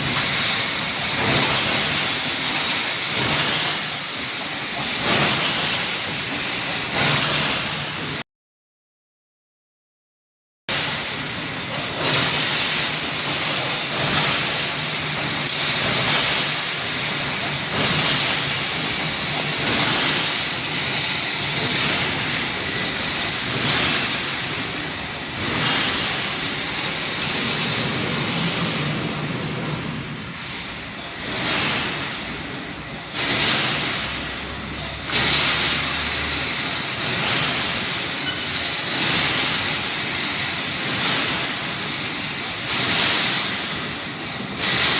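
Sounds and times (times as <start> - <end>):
welding machine clatter and hiss: 0.0 - 8.2, 10.7 - 44.9.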